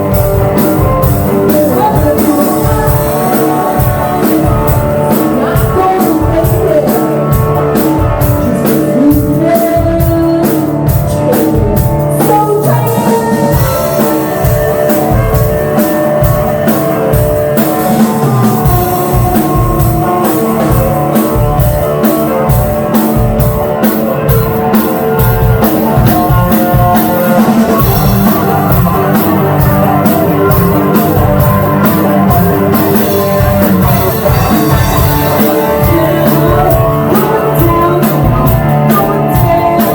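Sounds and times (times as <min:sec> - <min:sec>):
drum kit beat: 0:00.0 - 0:39.9
guitars: 0:00.0 - 0:39.9
rock band playing live: 0:00.0 - 0:39.9.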